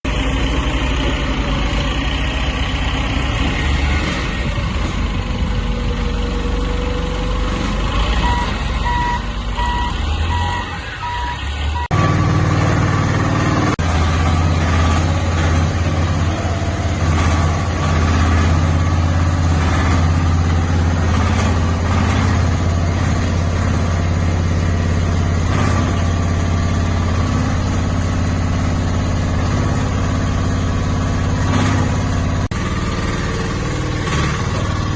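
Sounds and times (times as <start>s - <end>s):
diesel engine running: 0.0s - 34.9s
electronic beeps: 8.2s - 12.2s.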